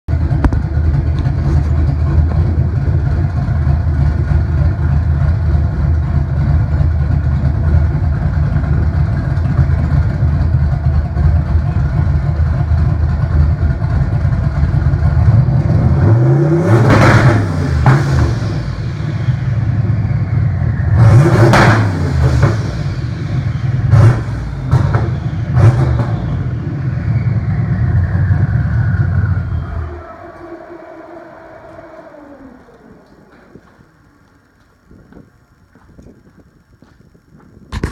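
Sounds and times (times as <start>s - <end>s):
car engine idling and revving: 0.0s - 37.9s
high whine falling in pitch: 14.0s - 37.9s.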